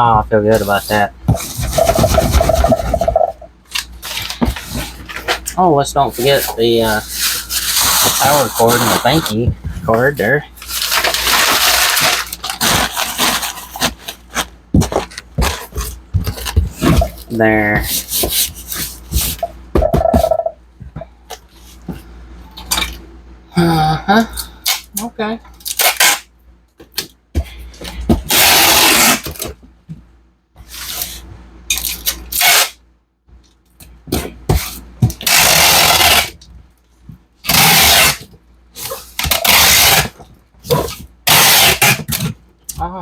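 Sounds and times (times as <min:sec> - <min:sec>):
items knocking in cardboard box: 0:01.2 - 0:03.5, 0:14.7 - 0:21.0
packing tape pulled off dispenser: 0:07.2 - 0:09.4, 0:10.6 - 0:15.9, 0:25.6 - 0:26.3, 0:28.3 - 0:29.6, 0:30.7 - 0:32.8, 0:34.5 - 0:36.4, 0:37.4 - 0:42.4.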